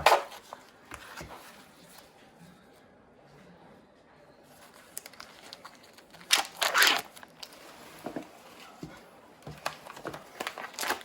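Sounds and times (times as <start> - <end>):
plastic wrapper crinkling and tearing: 4.8 - 7.6, 9.8 - 11.0.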